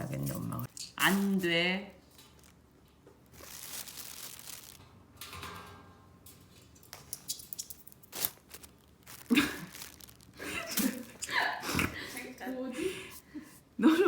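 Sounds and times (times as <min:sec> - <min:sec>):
clicks and crinkly rustling: 0:00.7 - 0:05.6, 0:06.3 - 0:11.4.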